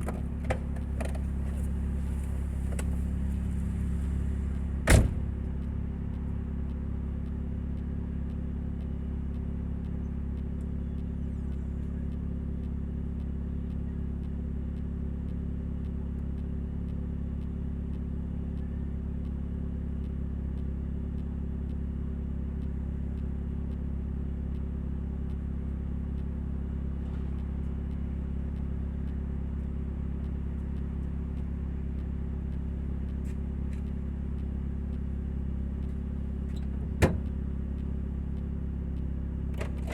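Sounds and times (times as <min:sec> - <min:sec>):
car engine with exhaust leak drone: 0:00.0 - 0:39.9.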